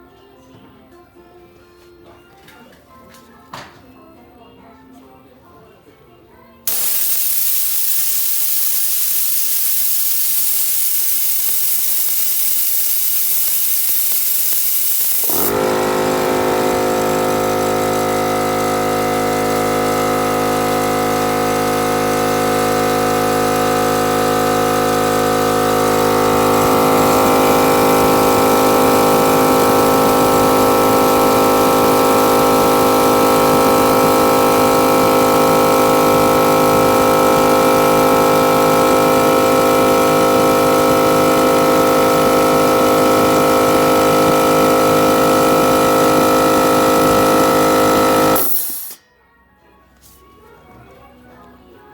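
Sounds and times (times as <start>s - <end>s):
compressed air hissing: 6.7s - 18.6s, 45.6s - 49.0s
compressor motor whining: 6.7s - 49.0s.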